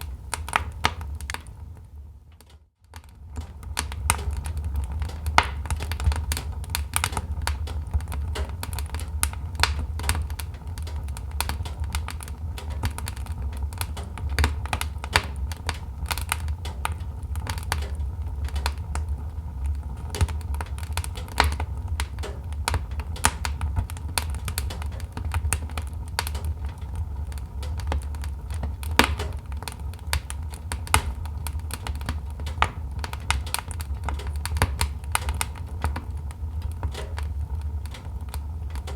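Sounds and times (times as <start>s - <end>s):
logs crackling in a fireplace: 0.0s - 38.9s
low rumble of fire: 0.0s - 38.9s.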